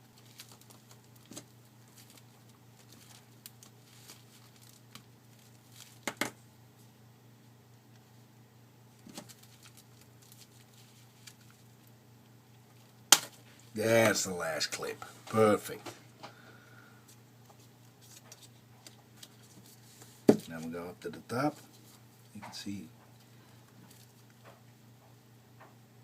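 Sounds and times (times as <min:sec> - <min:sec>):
low steady hum: 0:00.0 - 0:26.0.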